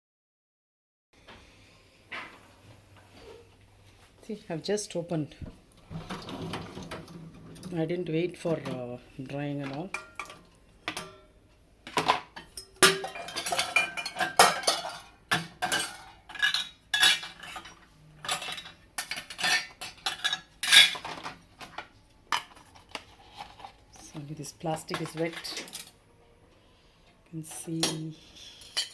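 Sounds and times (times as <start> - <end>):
metal utensils and dishes clinking: 5.9 - 11.3, 11.9 - 26.0, 27.4 - 28.9.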